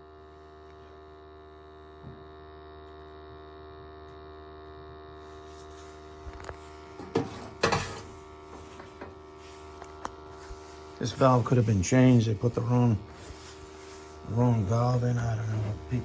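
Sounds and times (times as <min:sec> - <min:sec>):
electrical hum of boiler equipment: 0:00.0 - 0:16.0.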